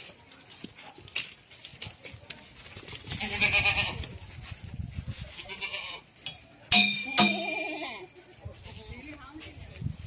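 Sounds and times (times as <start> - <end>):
goats bleating: 3.1 - 4.1, 5.3 - 6.2, 7.2 - 8.2.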